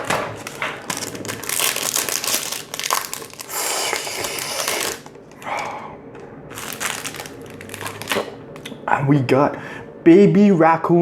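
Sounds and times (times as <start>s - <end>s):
foil pack tearing: 0.0s - 5.1s, 6.5s - 8.7s
wrapper crinkling: 0.0s - 5.2s, 6.5s - 8.8s.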